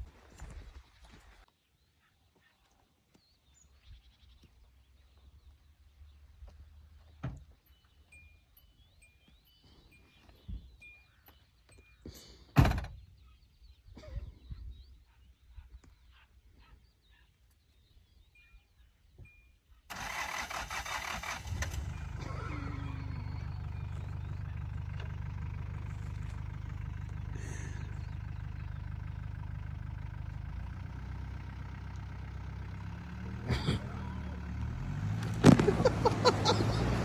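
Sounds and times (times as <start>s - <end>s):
engine running with low hum: 19.9s - 37.0s.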